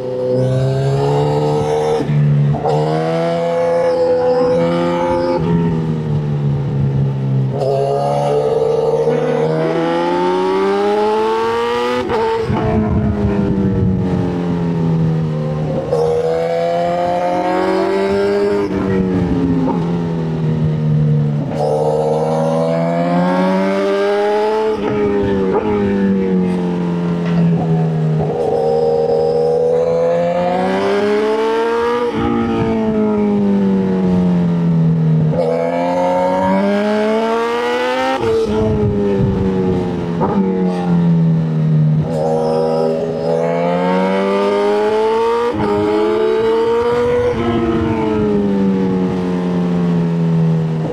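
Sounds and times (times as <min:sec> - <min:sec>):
motorcycle engine revving: 0:00.0 - 0:50.9.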